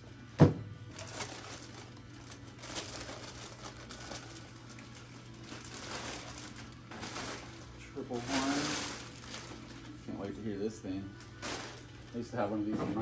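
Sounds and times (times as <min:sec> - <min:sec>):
packaging rustling and crinkling: 0:00.9 - 0:10.4, 0:11.2 - 0:13.0.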